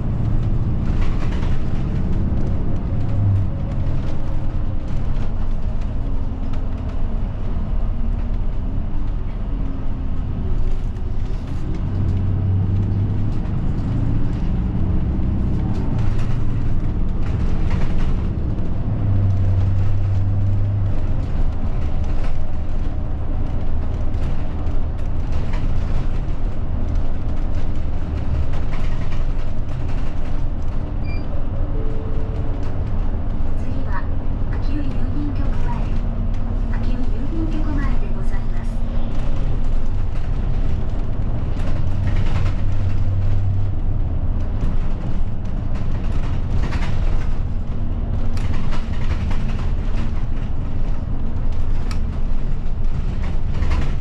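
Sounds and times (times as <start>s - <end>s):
diesel bus engine running: 0.0s - 54.0s
road and tyre noise: 0.0s - 54.0s.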